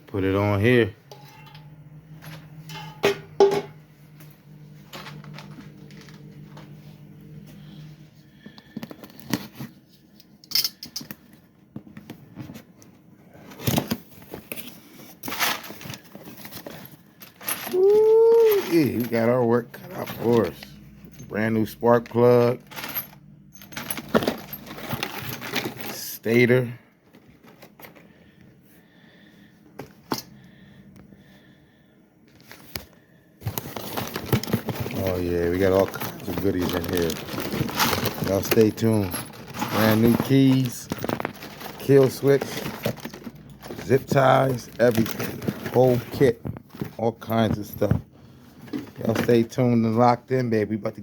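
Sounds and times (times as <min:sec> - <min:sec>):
packaging rustling and tearing: 0:32.3 - 0:47.0
loud crinkling: 0:33.4 - 0:46.4
parts clicking and knocking: 0:35.6 - 0:45.8.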